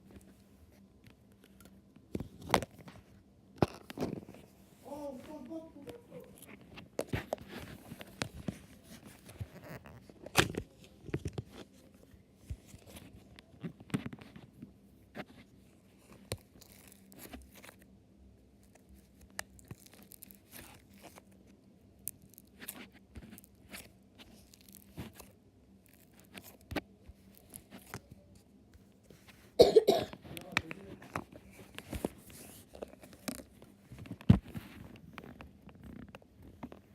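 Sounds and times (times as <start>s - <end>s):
slime crackling and popping: 19.2s - 21.4s, 22.0s - 28.0s.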